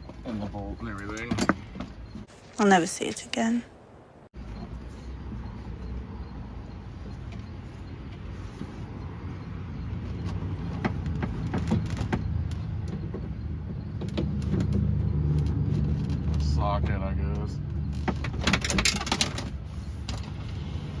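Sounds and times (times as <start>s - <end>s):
rumble of handling noise: 0.0s - 2.6s, 4.2s - 21.0s.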